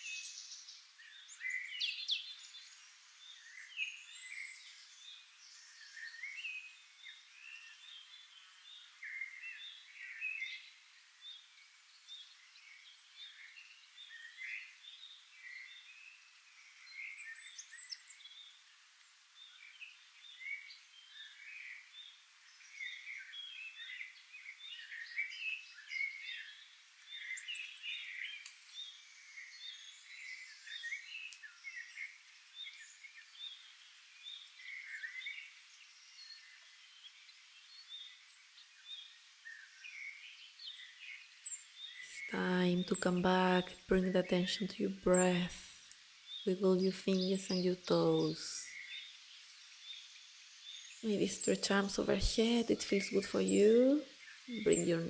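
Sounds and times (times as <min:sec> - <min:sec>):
birds chirping and singing: 0:37.7 - 0:49.2, 0:49.8 - 0:55.0.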